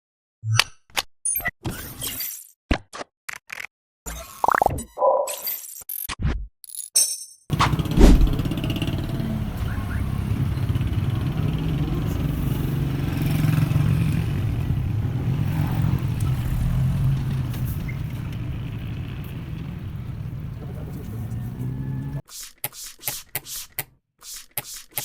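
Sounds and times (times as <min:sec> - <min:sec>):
old car engine idling: 0:07.5 - 0:22.2.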